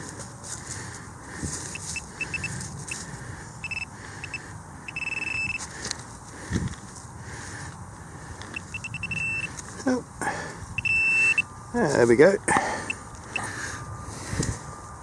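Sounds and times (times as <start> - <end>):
metal detector high beeps: 1.7 - 3.0, 3.6 - 5.6, 8.5 - 9.6, 10.8 - 11.5
wind buffeting microphone: 6.3 - 9.4, 13.4 - 15.0.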